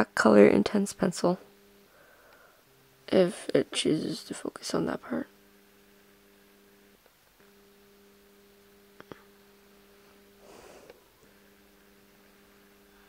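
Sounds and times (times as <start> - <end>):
faint electrical hum: 0.0 - 13.0
soft breathy noise: 10.4 - 11.8.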